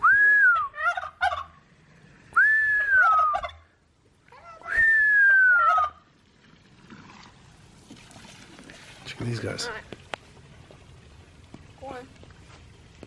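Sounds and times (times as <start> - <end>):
person whistling falling note: 0.0 - 0.7, 2.4 - 3.4, 4.7 - 5.6
turkey gobbling: 0.5 - 1.6, 2.7 - 6.1.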